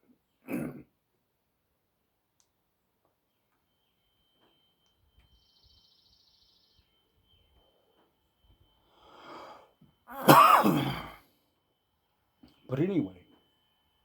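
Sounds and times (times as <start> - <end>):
man coughing: 0.5 - 0.9, 10.1 - 11.2
man breathing out: 8.9 - 10.2.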